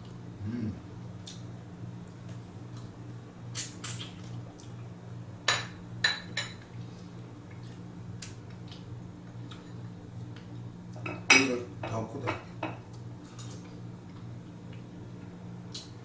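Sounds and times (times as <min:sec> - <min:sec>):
steady low hum: 0:00.0 - 0:03.5.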